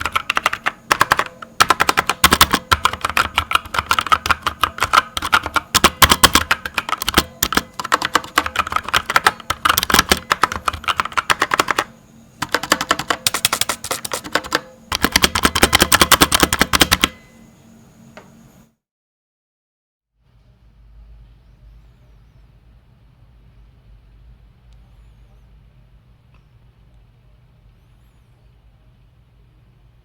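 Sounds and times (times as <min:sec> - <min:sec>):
mechanical keyboard typing: 0:00.0 - 0:17.2.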